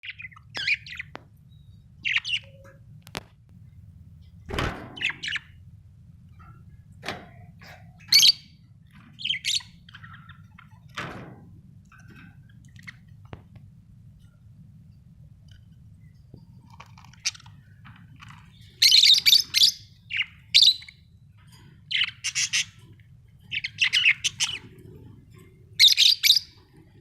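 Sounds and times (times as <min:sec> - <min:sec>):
budgerigars chirping: 0:00.0 - 0:01.1, 0:02.0 - 0:02.6, 0:05.0 - 0:05.6, 0:07.7 - 0:08.6, 0:09.2 - 0:11.0, 0:18.3 - 0:21.1, 0:21.9 - 0:25.1, 0:25.7 - 0:26.8.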